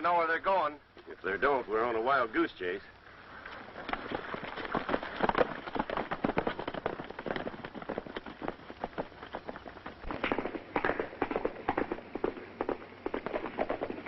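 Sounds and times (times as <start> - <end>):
galloping horse hoofbeats: 3.7 - 14.0.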